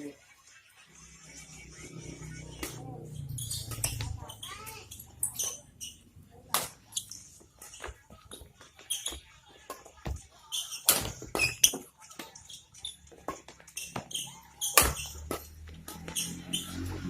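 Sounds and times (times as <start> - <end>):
rackets hitting shuttlecock: 2.6 - 2.9, 6.4 - 8.4, 9.0 - 16.7.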